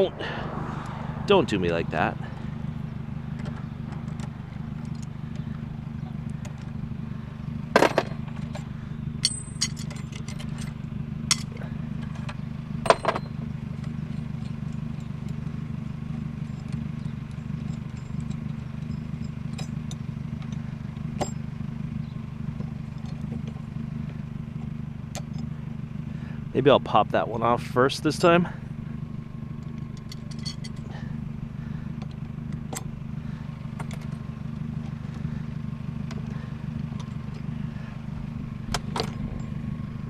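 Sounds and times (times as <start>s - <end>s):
steady low hum: 0.0s - 40.0s
metallic clinks and knocks: 7.8s - 15.4s, 16.4s - 21.5s, 29.6s - 31.0s.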